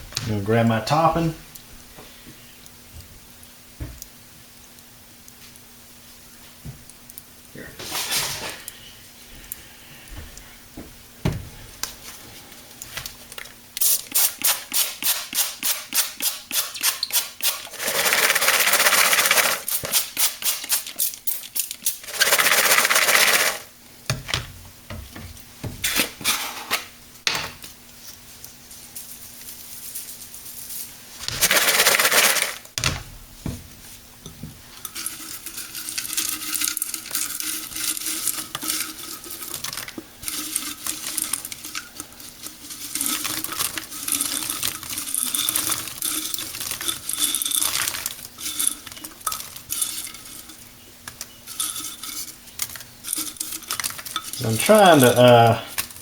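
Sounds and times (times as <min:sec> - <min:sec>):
shaker tapping onto popcorn: 0:12.9 - 0:23.7, 0:29.3 - 0:32.7.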